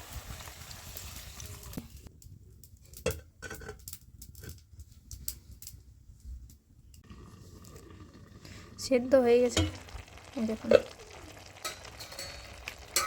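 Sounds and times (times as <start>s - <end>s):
vegetables sizzling in oil: 0.0s - 2.1s, 7.2s - 13.0s.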